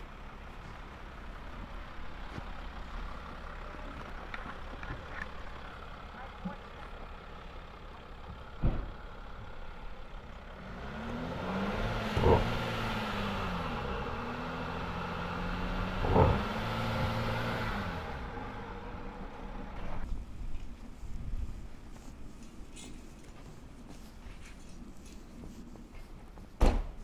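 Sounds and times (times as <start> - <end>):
vehicle passing close by: 10.7 - 18.8.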